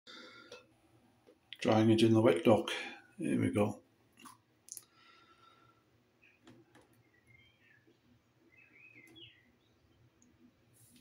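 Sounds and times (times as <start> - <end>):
faint bird-like chirps: 6.2 - 10.3.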